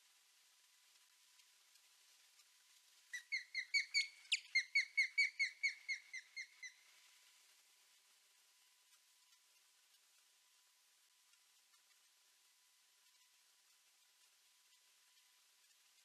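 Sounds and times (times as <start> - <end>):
osprey whistled alarm calls: 3.1 - 6.8.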